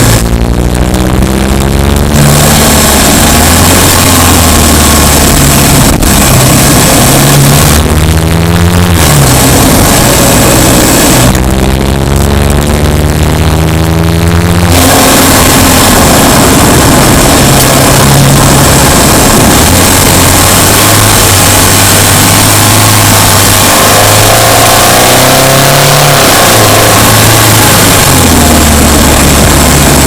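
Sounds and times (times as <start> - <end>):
car engine pulling under load: 0.0 - 30.0
steady rushing noise: 0.0 - 30.0.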